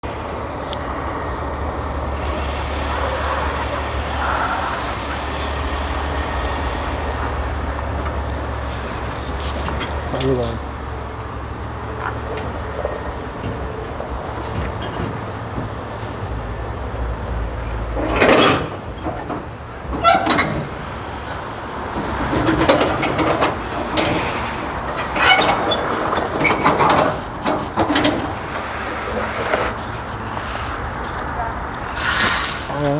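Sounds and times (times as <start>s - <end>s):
diesel truck engine droning: 0.0s - 32.9s
knocks and rattles: 22.2s - 30.3s.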